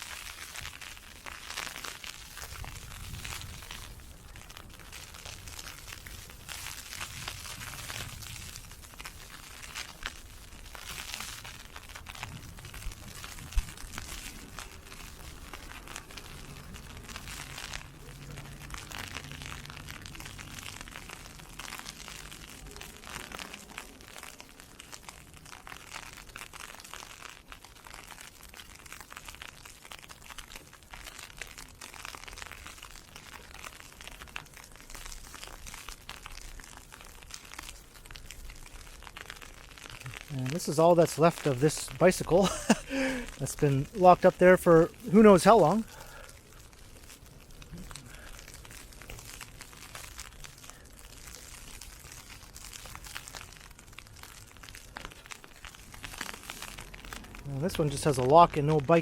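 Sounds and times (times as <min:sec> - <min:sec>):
ice pellets ticking: 0:00.0 - 0:59.0
snow crunching underfoot: 0:40.0 - 0:46.0, 0:56.0 - 0:59.0.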